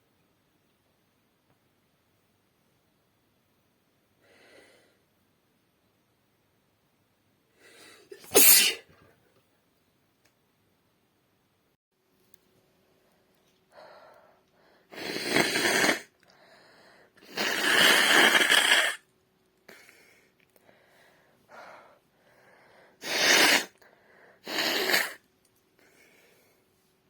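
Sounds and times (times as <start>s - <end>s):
woman blowing her nose: 8.0s - 8.9s, 14.9s - 16.2s, 17.2s - 19.0s, 23.0s - 23.8s, 24.4s - 25.2s
woman sneezing: 8.1s - 8.9s.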